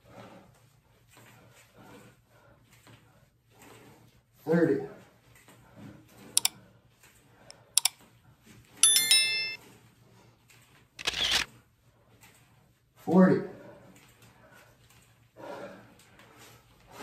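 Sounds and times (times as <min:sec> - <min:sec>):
metal jingle: 0:08.8 - 0:09.6
small metal clicks: 0:11.0 - 0:11.5.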